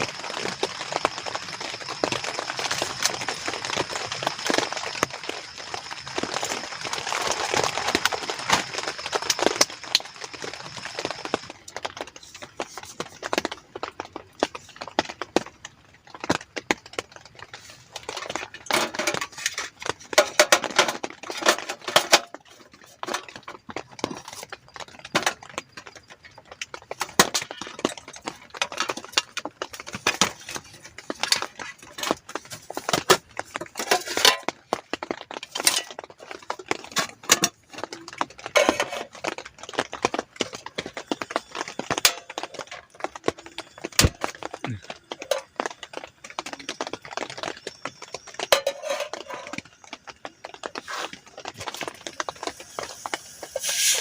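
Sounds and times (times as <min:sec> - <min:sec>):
metal pots and cutlery clinking: 0:17.9 - 0:25.5, 0:27.0 - 0:39.4, 0:40.1 - 0:49.7, 0:53.5 - 0:54.0.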